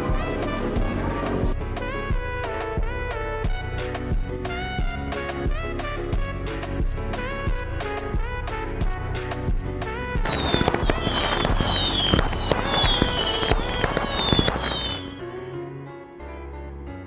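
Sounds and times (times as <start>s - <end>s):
background music: 0.0s - 17.0s
fireworks crackling: 10.2s - 15.2s
falling whistles: 10.3s - 15.2s.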